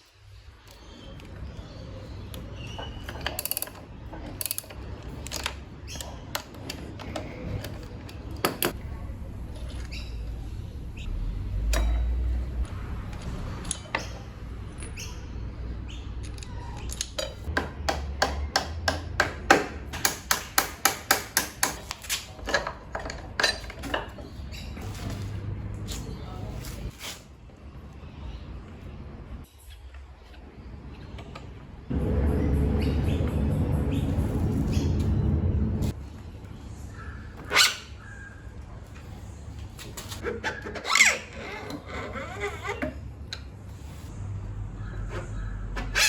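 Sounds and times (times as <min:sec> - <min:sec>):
hand tools clicking and knocking: 0:02.8 - 0:08.8, 0:16.9 - 0:24.3.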